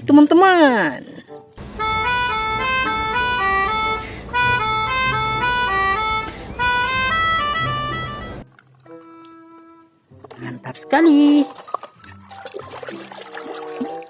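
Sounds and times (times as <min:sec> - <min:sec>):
bus horn playing a multi-note tune: 0:01.6 - 0:08.4.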